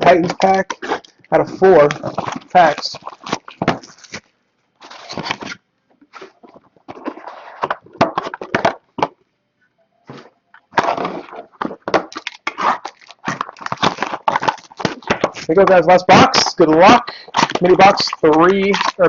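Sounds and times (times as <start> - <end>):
cardboard and wrapper rustling: 0.0 - 9.2, 10.1 - 19.0.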